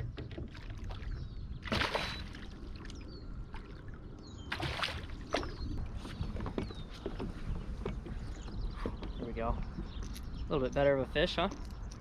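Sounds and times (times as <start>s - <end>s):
water splashing around a kayak: 0.0s - 6.6s.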